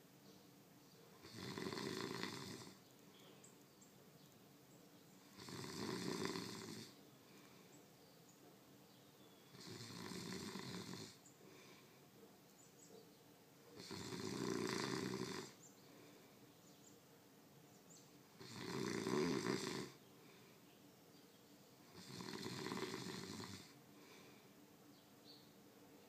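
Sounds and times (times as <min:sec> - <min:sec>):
quiet breathing: 0:00.2 - 0:26.0
person snoring loudly: 0:01.2 - 0:02.8, 0:05.3 - 0:07.0, 0:09.5 - 0:11.2, 0:13.8 - 0:15.6, 0:18.4 - 0:20.0, 0:21.9 - 0:23.8.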